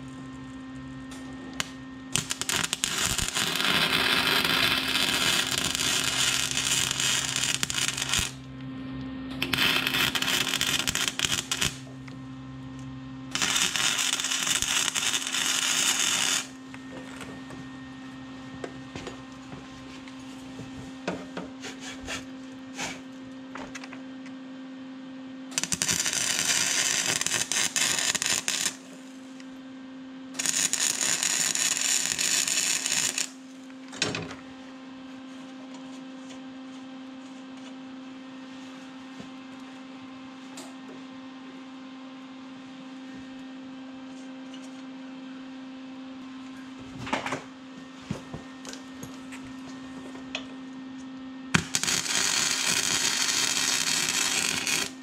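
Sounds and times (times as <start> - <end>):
electrical hum: 0.0 - 55.0
power tool running: 1.5 - 8.6, 9.3 - 12.2, 13.3 - 17.6, 25.5 - 29.2, 30.3 - 33.4, 51.5 - 55.0.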